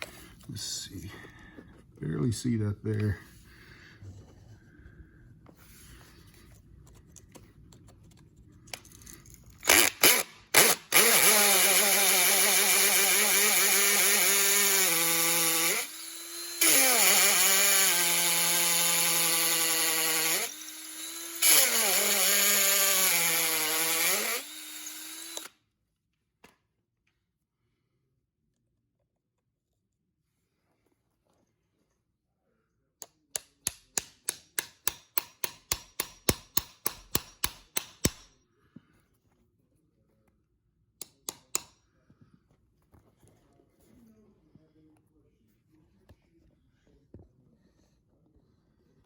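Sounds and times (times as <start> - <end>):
power drill drilling into wood: 9.6 - 25.5.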